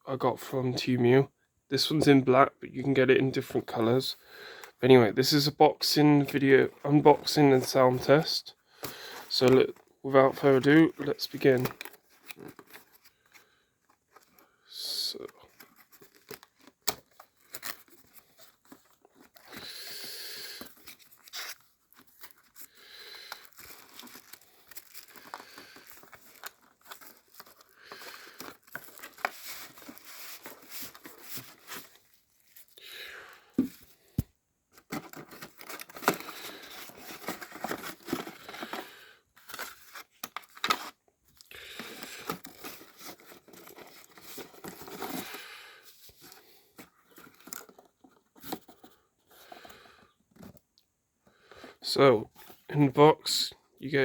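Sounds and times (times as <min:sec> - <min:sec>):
packaging tearing and crinkling: 0:15.5 - 0:32.8, 0:34.8 - 0:45.7.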